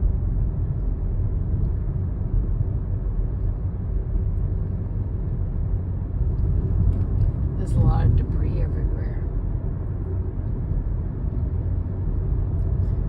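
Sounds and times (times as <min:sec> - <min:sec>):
car interior road rumble: 0:00.0 - 0:13.0.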